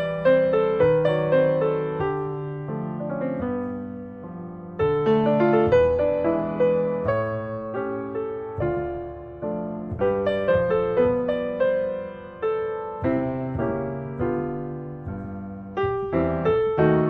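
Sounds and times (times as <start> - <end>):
gentle piano chords: 0.0 - 17.0.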